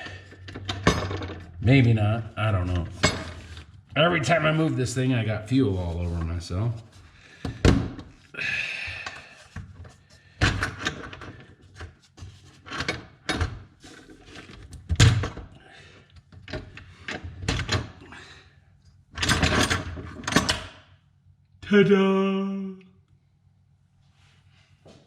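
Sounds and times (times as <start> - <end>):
metal parts knocking: 0.0 - 1.6.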